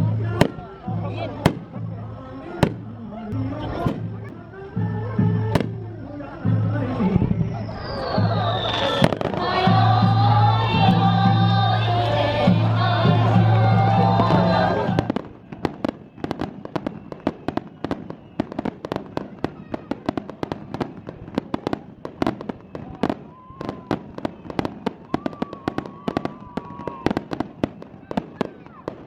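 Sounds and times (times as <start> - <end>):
loud music with singing: 0.0 - 15.2
fireworks bangs and cracks: 0.4 - 0.7, 1.4 - 1.8, 2.6 - 2.9, 5.5 - 5.8, 8.5 - 29.0.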